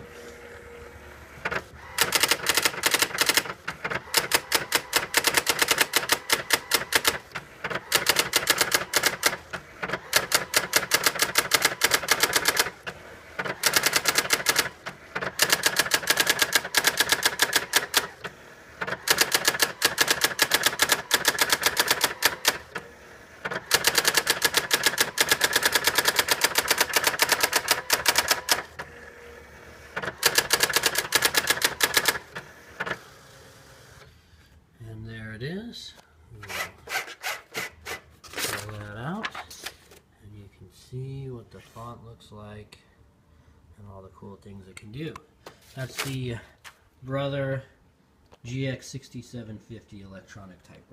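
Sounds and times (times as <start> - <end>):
electronic typewriter printing: 1.3 - 29.1, 29.8 - 33.1, 36.4 - 39.7.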